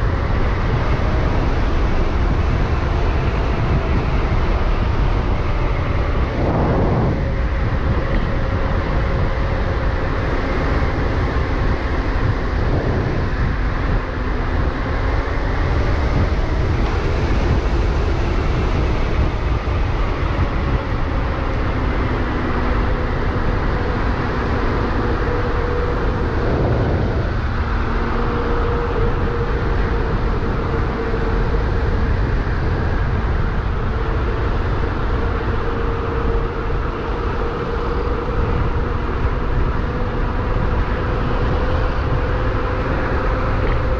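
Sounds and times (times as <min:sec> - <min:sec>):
hub motor whine: 0:00.0 - 0:43.9
road rumble: 0:00.0 - 0:43.9
wind rush on microphone: 0:00.0 - 0:43.9.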